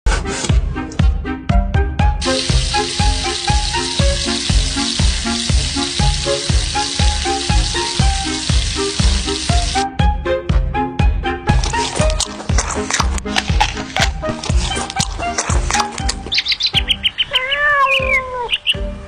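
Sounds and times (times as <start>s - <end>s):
dense sizzling hiss: 2.2s - 9.8s.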